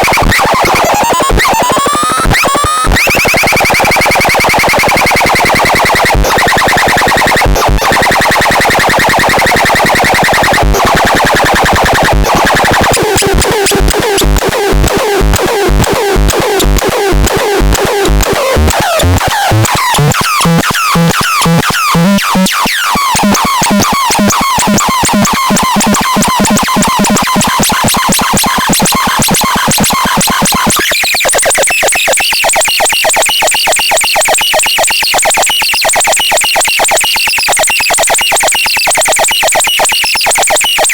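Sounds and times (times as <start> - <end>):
electronic synthesizer music: 5.3 - 27.8.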